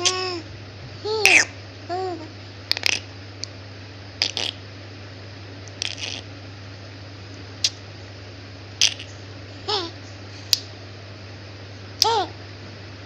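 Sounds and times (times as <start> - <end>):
low steady hum: 0.0 - 13.0
baby mouth smacking: 5.7 - 6.2.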